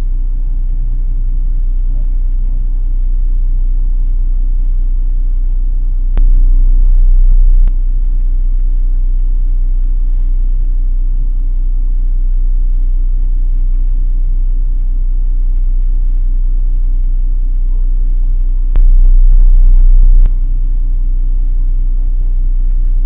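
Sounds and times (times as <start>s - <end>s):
vehicle engine rumbling: 6.2s - 7.7s, 18.8s - 20.6s.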